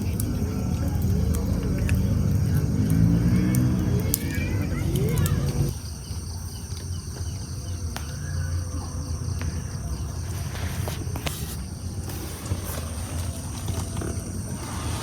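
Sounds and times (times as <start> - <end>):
faint clicks: 0.0 - 5.8
insects chirring: 0.0 - 15.0.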